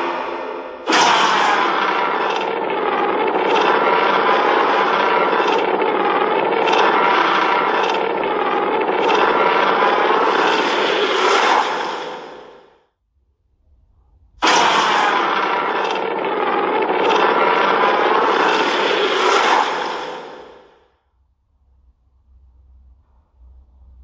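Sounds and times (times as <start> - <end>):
monster roar: 0.0 - 12.6, 14.4 - 20.8.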